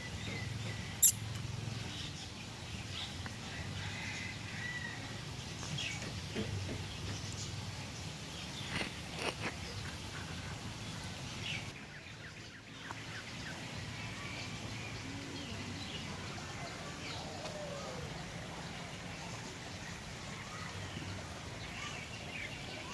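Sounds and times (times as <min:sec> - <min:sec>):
faint bird chirps: 0:00.3 - 0:01.4.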